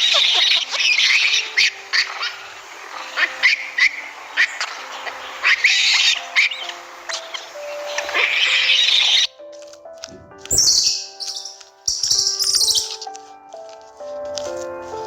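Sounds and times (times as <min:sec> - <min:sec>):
harsh hissy animal calls: 0:00.0 - 0:09.3, 0:10.5 - 0:13.1.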